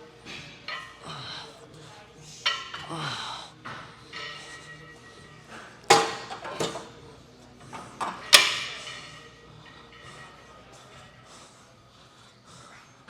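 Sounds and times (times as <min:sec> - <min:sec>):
metal weight plates clanking: 0:04.0 - 0:07.0, 0:07.7 - 0:11.1.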